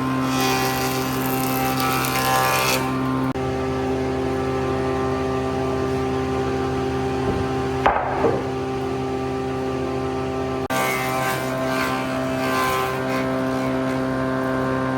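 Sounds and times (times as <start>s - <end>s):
machine motor running: 3.0s - 10.7s
short sharp knock: 7.2s - 8.6s.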